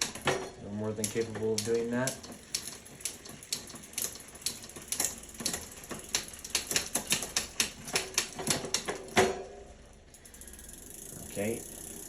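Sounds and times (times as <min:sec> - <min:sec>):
bicycle gear shifter clicking: 0:01.0 - 0:09.2.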